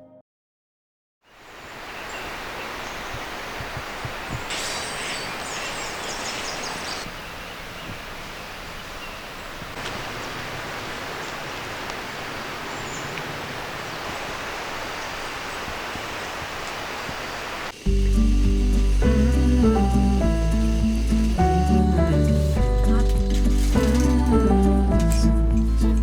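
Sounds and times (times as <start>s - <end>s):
outdoor ambient noise: 1.3s - 26.0s
rustling crackles: 9.5s - 25.7s.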